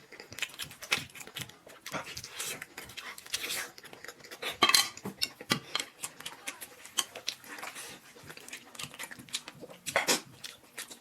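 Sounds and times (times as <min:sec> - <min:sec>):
utensils clinking against dishes: 0:04.5 - 0:06.0.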